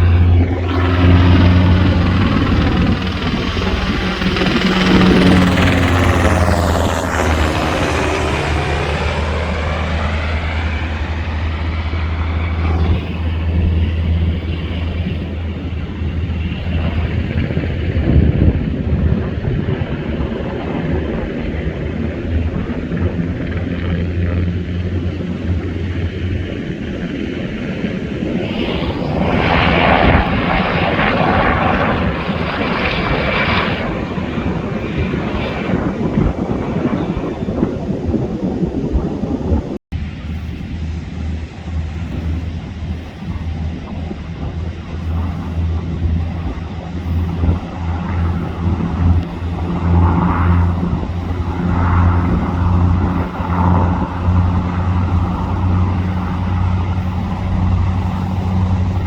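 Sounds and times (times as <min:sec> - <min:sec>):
rushing noise: 0:00.0 - 0:17.4, 0:40.0 - 0:59.0
helicopter rotor beating: 0:00.0 - 0:59.0.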